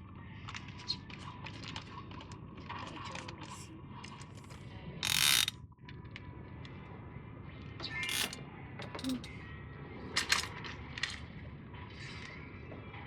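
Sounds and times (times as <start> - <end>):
fishing tackle clicks and rattles: 5.0 - 5.6, 8.1 - 9.3.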